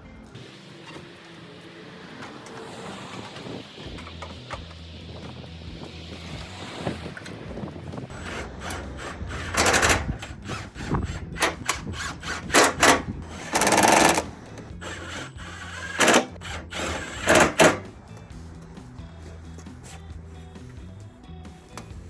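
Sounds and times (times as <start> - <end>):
power driver driving bolts: 2.1 - 18.7.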